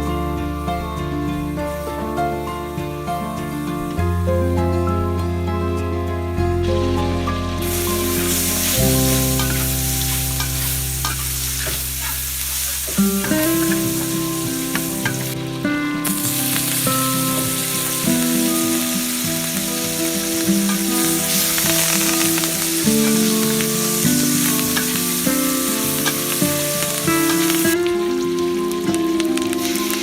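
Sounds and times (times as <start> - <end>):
background music with melody: 0.0 - 30.0
food sizzling in a pan: 7.1 - 30.0.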